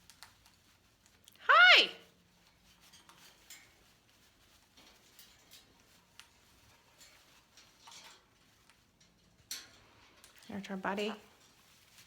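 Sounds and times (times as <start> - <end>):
soft rustle: 0.0 - 12.0.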